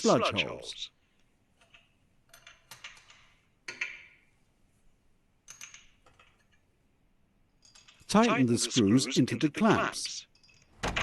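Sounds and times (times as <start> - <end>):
metallic clicks and clinks: 5.4 - 6.7, 7.5 - 8.1, 10.3 - 11.0.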